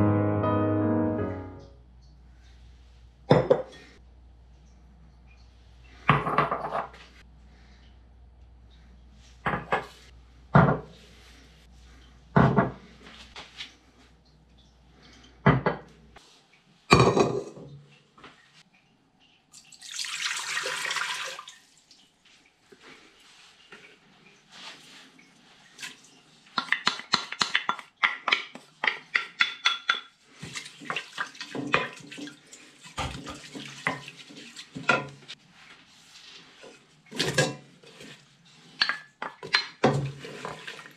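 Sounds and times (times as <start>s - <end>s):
dishes clinking at sink: 3.3s - 4.0s, 6.1s - 7.0s, 12.4s - 12.9s, 16.9s - 17.8s.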